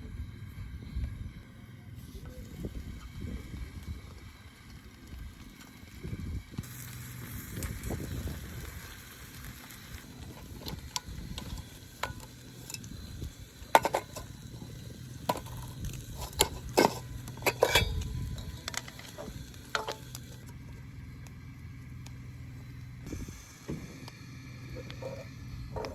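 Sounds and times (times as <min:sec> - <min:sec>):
food sizzling in a frying pan: 0:06.6 - 0:20.4
utensil scraping a pan: 0:13.7 - 0:20.4.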